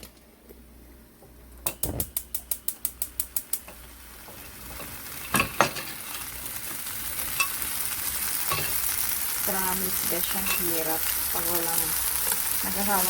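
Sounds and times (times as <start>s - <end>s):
gas stove igniter clicking: 1.6s - 3.8s
food sizzling in a frying pan: 1.8s - 13.0s.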